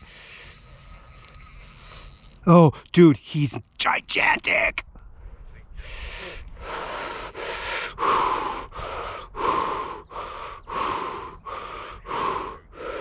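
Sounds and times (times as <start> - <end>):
man panting: 5.7 - 13.0.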